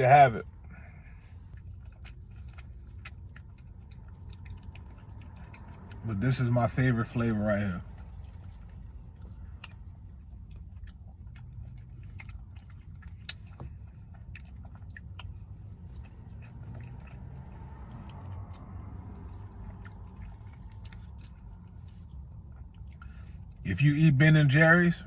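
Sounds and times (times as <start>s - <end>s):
wet mouth sounds and chewing: 0.0s - 23.6s.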